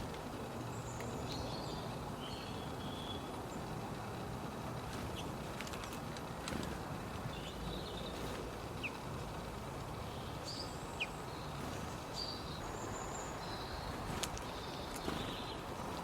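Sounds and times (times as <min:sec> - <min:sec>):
steady background noise: 0:00.0 - 0:16.0
high bird chirps: 0:07.2 - 0:09.1, 0:10.0 - 0:16.0.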